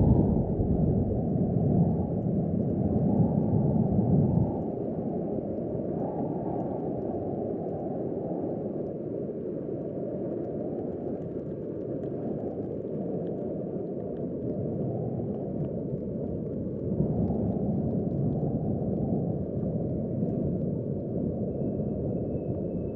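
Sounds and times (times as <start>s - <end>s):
strong wind buffeting microphone: 0.0s - 4.6s.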